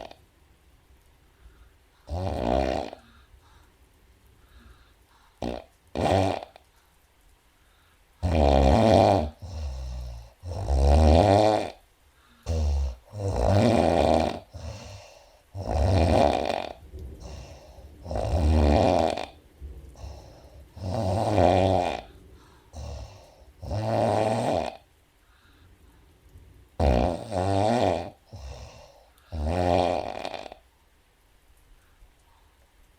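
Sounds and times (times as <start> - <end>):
woman snoring: 0.0 - 0.2, 2.0 - 3.4, 5.3 - 6.7, 8.2 - 11.8, 12.4 - 24.9, 26.8 - 30.7.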